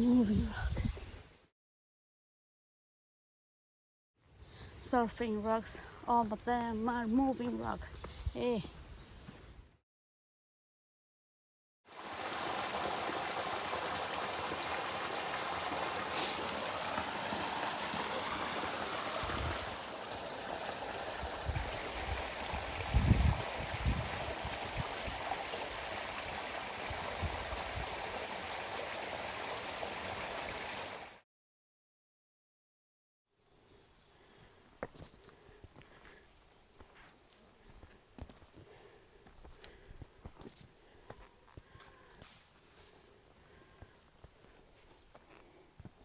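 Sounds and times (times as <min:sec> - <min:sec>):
running water rushing: 0:11.9 - 0:31.2.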